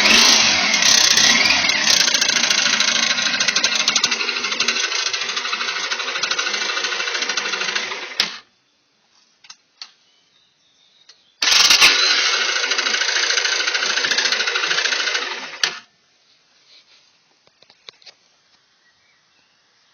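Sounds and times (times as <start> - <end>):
engine running with clatter: 0.0 - 8.4, 11.4 - 15.8.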